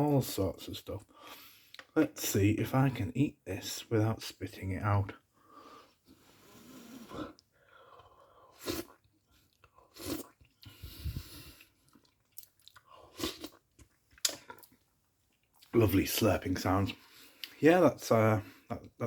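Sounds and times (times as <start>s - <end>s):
slurping and wet chewing: 7.0s - 15.7s.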